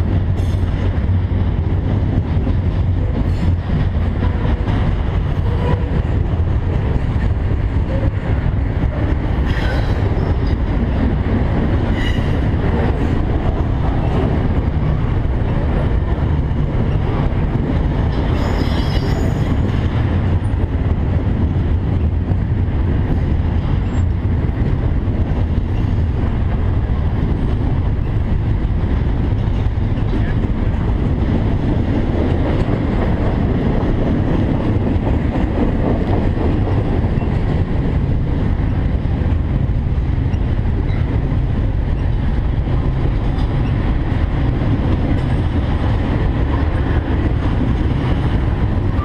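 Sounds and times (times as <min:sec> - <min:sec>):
freight train rumbling past: 0:00.0 - 0:49.0.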